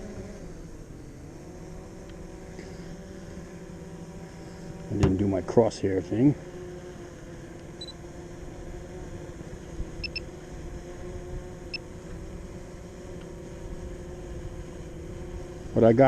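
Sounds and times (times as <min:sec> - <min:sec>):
drone propellers humming: 0:00.0 - 0:05.7, 0:09.7 - 0:10.5
short electronic beeps: 0:10.0 - 0:10.2.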